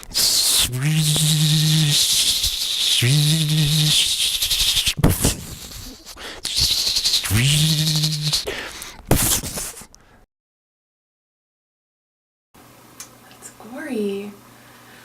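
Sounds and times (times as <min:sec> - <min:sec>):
person humming engine imitation: 0:00.0 - 0:09.8
explosive mouth bursts: 0:00.0 - 0:09.9.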